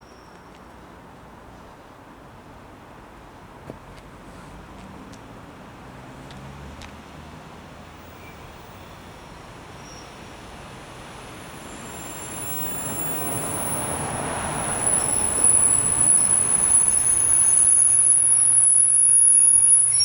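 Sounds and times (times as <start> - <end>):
train rumble: 7.8 - 20.0
high-pitched train squeal: 8.0 - 20.0.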